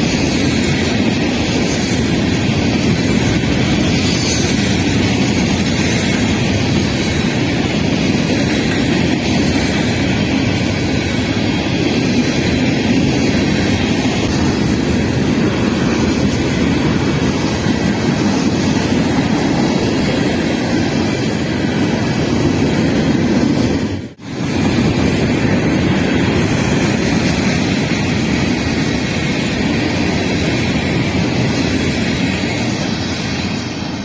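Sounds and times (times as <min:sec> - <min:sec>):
freight train rumbling by: 0:00.0 - 0:34.0.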